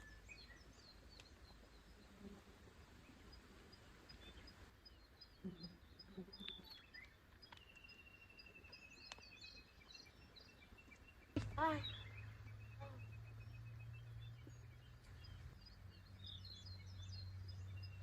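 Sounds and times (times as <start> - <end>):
soft low bird calls: 0.0 - 18.0
bird trill: 11.2 - 18.0
high bird chirps: 11.3 - 18.0.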